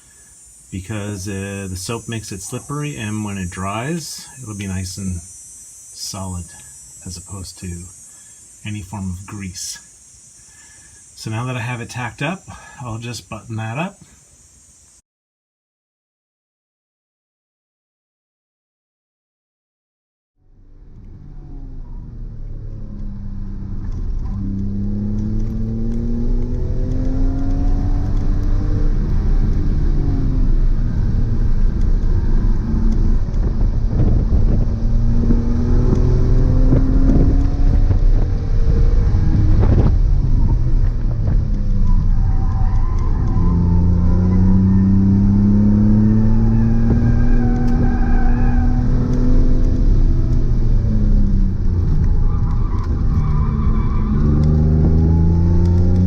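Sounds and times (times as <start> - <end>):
car engine accelerating hard: 20.4 - 56.0.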